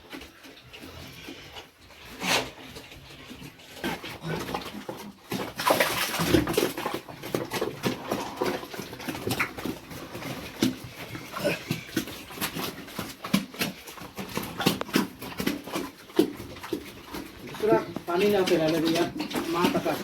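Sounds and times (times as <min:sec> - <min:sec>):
animals whining and squealing: 0:07.8 - 0:20.0.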